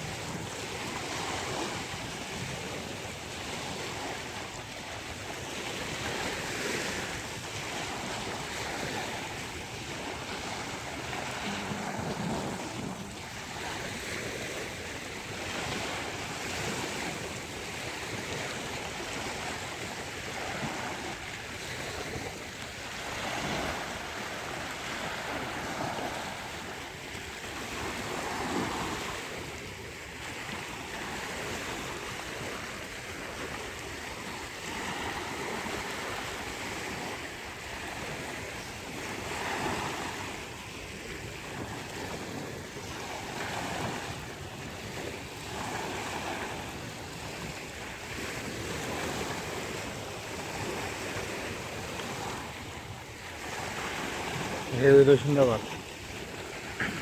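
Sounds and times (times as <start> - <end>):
surf breaking on beach: 0.0 - 57.0
wind buffeting microphone: 5.2 - 26.8.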